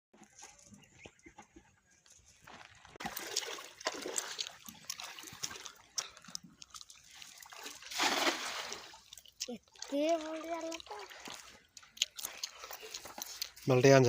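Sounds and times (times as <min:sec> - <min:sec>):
water splashing and sloshing: 0:02.5 - 0:14.0.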